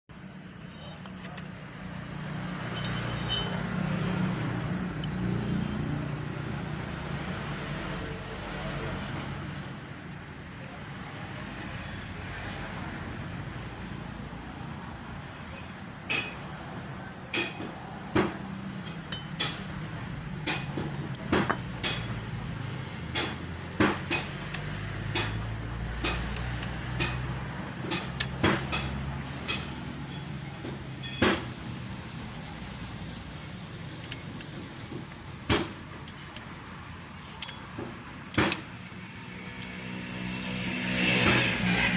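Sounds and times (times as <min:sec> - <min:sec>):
sharp metallic engine knocks: 0:23.1 - 0:31.7, 0:34.0 - 0:36.5, 0:37.3 - 0:38.8.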